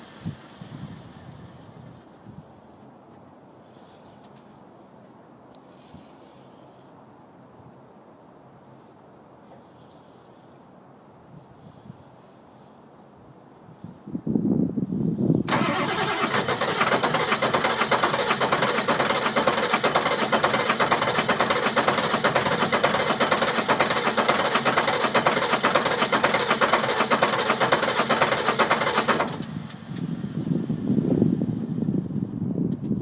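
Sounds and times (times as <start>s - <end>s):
starter motor cranking engine: 15.5s - 31.9s.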